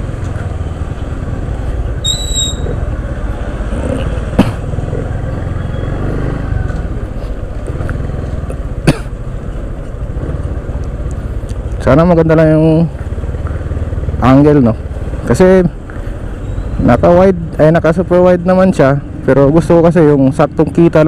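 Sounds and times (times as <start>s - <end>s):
motorcycle engine rumble: 0.0s - 21.0s
brief high whistle: 2.0s - 2.8s.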